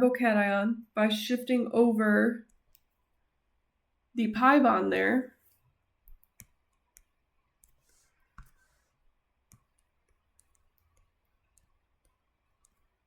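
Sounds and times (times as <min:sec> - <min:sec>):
faint irregular clicks: 0:02.4 - 0:03.2, 0:05.4 - 0:13.0.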